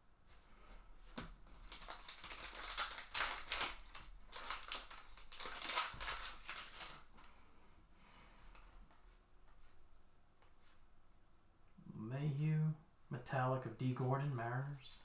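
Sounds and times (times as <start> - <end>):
plastic wrapper crinkling and tearing: 1.2 - 7.4.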